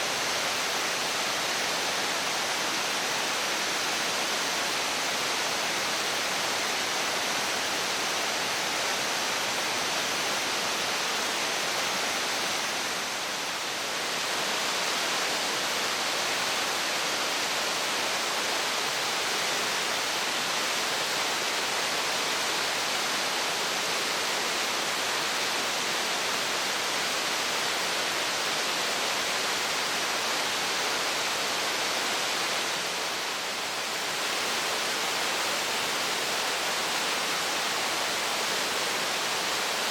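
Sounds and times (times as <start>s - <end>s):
waterfall roar: 0.0s - 39.9s.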